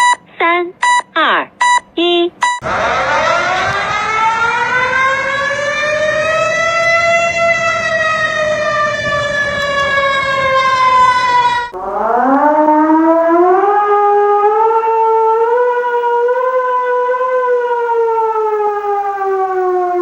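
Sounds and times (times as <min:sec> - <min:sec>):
siren climbing in steps: 0:00.0 - 0:20.0
warning siren wailing: 0:02.6 - 0:20.0.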